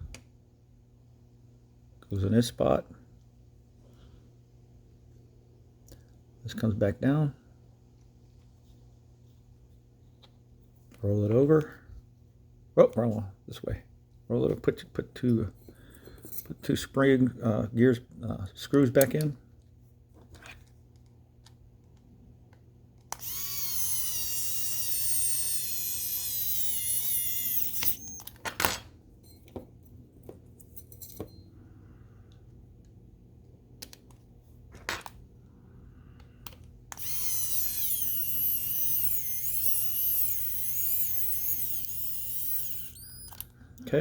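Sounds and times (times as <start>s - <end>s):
electric screwdriver whining: 23.1s - 28.4s, 36.9s - 43.5s.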